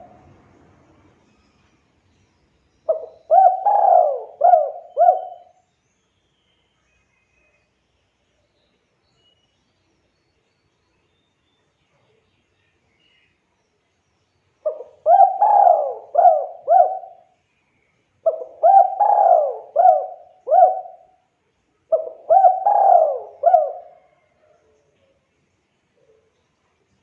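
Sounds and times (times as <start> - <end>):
dove cooing: 2.9 - 5.6, 14.6 - 17.3, 18.2 - 21.1, 21.9 - 24.6.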